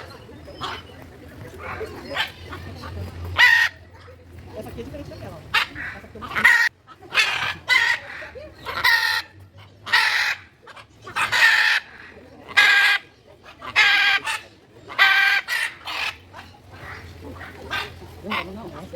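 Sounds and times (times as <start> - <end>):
large bird squawking: 0.0 - 4.1, 5.4 - 18.9.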